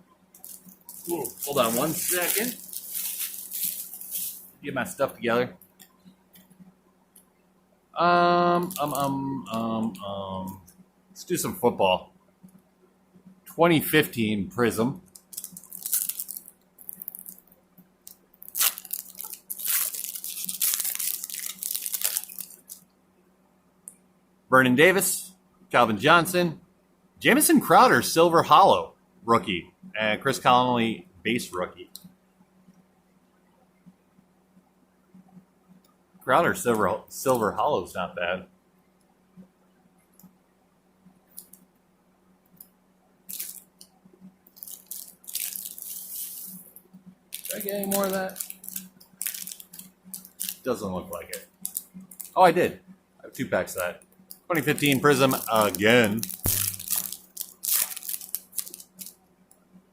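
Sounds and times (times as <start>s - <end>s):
foil wrapper tearing and crinkling: 0.4s - 4.5s, 15.1s - 17.4s, 18.4s - 22.8s, 43.3s - 43.7s, 44.5s - 46.7s, 47.4s - 52.4s, 54.4s - 59.2s.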